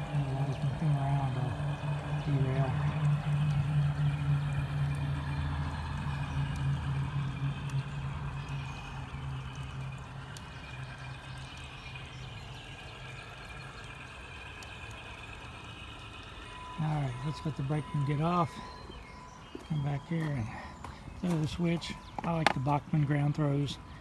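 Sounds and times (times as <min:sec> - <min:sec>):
low diesel engine drone: 0:00.0 - 0:24.0.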